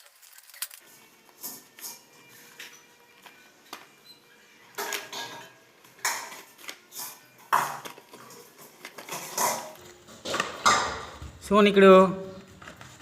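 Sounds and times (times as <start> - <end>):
packaging rustling and crinkling: 0.0 - 1.4, 7.6 - 10.5, 12.4 - 13.0.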